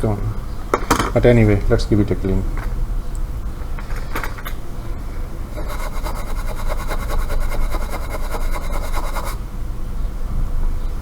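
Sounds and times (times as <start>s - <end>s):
steady low hum: 0.0s - 11.0s
small brush scrubbing circuit board: 5.5s - 9.4s.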